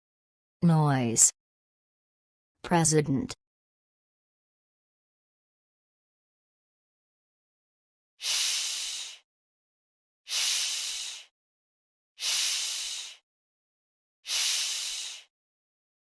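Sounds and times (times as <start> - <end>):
person making long sh hiss: 8.2 - 9.2, 10.3 - 11.3, 12.2 - 13.2, 14.3 - 15.3.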